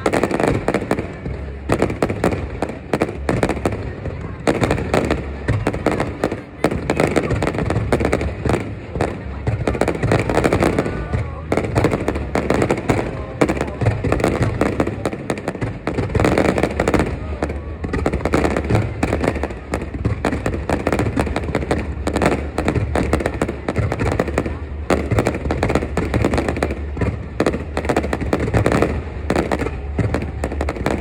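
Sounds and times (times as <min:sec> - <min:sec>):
crowd voices: 0:00.0 - 0:31.0
fireworks bangs and crackles: 0:00.0 - 0:31.0.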